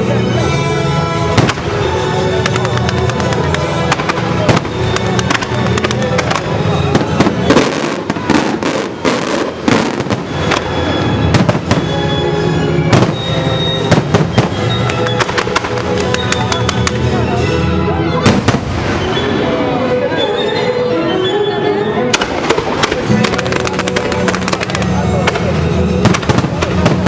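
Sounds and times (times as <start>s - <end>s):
loud music: 0.0s - 27.0s
fireworks bursting and crackling: 1.2s - 19.8s, 22.1s - 27.0s.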